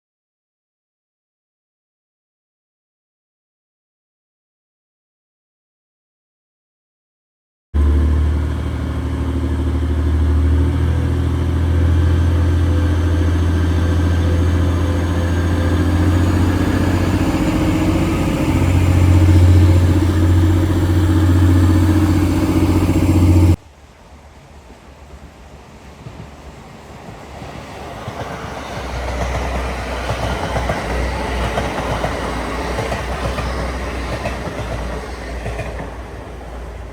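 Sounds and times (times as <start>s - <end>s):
train running: 7.8s - 36.9s.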